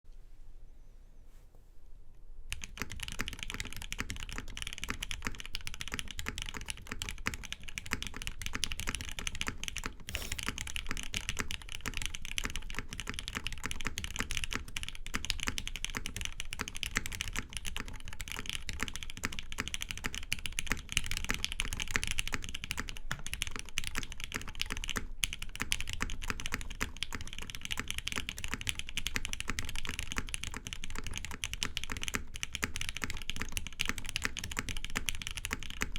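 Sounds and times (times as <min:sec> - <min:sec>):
fast typing on mechanical keyboard: 0:02.5 - 0:35.9.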